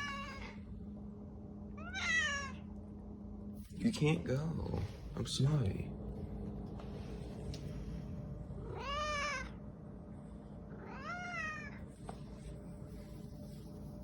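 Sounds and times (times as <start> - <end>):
cat meowing: 0.0 - 0.6, 1.8 - 2.6, 8.6 - 9.6, 10.8 - 11.8.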